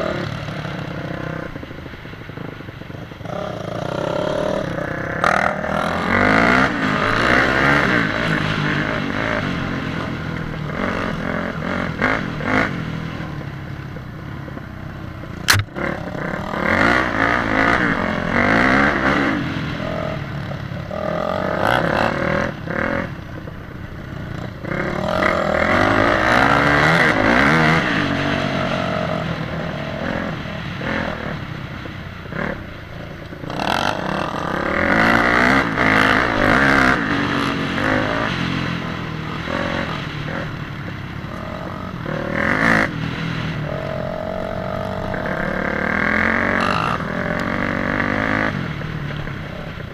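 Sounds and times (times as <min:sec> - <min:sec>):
motorcycle engine revving: 0:00.0 - 0:49.9
sharp click: 0:15.5 - 0:15.8.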